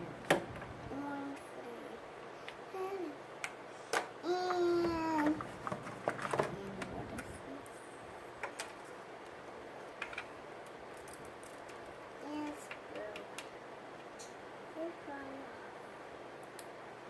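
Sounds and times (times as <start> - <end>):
child's vocal sound: 2.7 - 3.2, 4.2 - 5.4.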